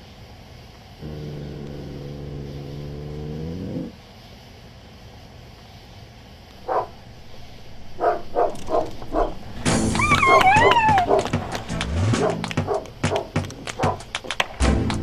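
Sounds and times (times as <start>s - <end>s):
dog growling: 1.0s - 4.0s, 6.6s - 11.6s
dog barking: 6.6s - 11.5s, 12.1s - 14.1s.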